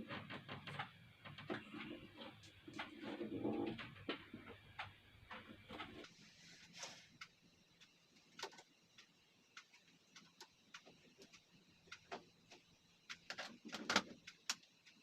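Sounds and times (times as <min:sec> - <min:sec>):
small parts and tools clicking: 0:06.8 - 0:15.0.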